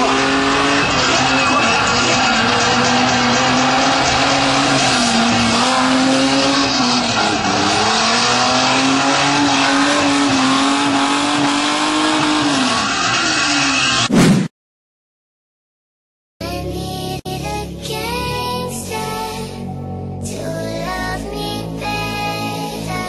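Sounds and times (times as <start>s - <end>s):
car engine at high revs: 0.0s - 14.1s
tyres squealing on pavement: 0.7s - 5.6s, 12.4s - 14.1s.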